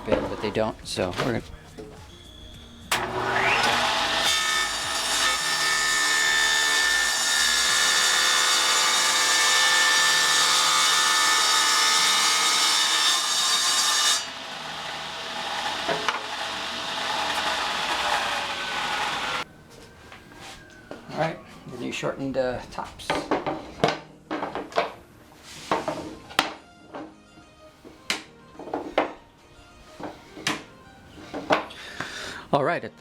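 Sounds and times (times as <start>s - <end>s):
power saw cutting wood: 2.9s - 19.4s.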